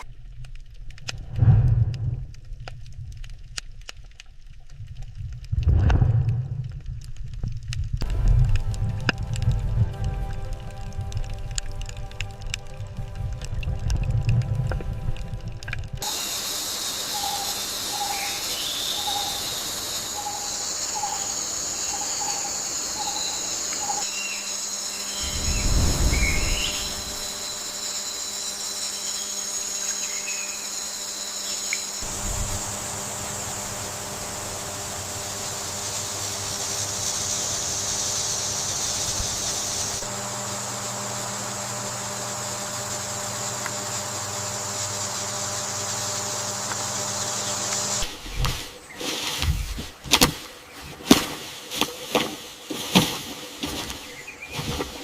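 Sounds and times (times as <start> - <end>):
low rumble: 0.3 - 3.6, 4.6 - 16.0, 25.1 - 27.8
high-pitched insect trilling: 16.0 - 40.1
bird chirps: 17.1 - 27.3.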